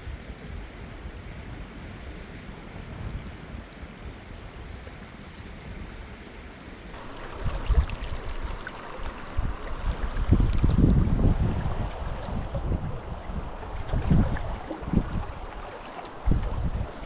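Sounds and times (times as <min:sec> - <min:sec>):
wind buffeting microphone: 0:00.0 - 0:17.0
flowing river water: 0:06.9 - 0:17.0.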